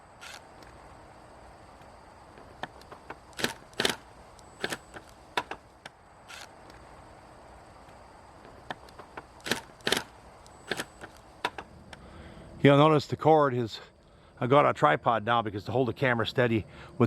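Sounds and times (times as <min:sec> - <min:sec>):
distant highway traffic hum: 0:00.0 - 0:17.0
sharp clicks and knocks: 0:01.8 - 0:06.8, 0:08.4 - 0:11.7.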